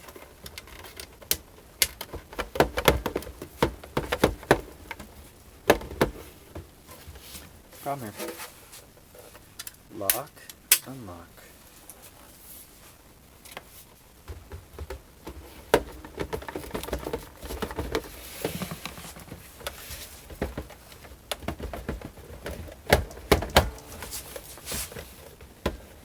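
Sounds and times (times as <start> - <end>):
plastic clicks and rustling: 0.0 - 6.8, 13.4 - 26.0.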